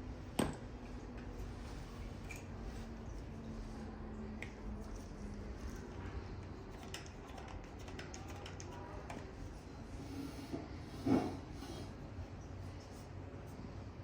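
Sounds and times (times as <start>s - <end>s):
faint clicks and taps: 5.7s - 9.3s.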